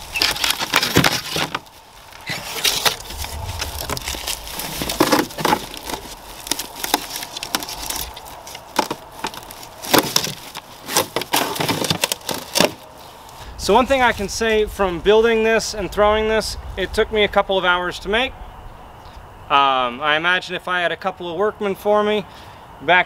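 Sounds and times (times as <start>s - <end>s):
plywood cracking and splintering: 0.0s - 13.0s.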